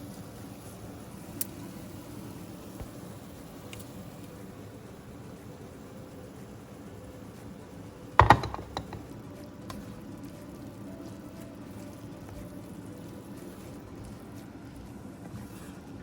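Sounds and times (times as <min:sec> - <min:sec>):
low steady hiss: 0:00.0 - 0:15.1
utensil knocking against a pot: 0:08.2 - 0:09.1.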